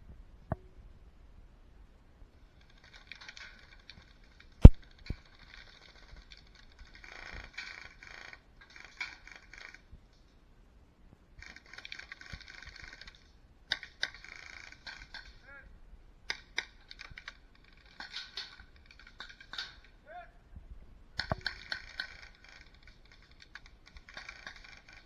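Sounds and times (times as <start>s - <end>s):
sharp crack: 4.6s - 5.2s.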